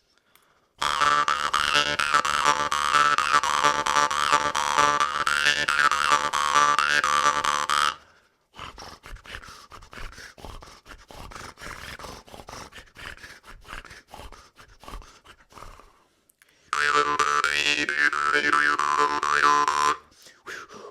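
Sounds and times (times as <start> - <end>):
mouth and breath sounds: 8.0 - 16.7.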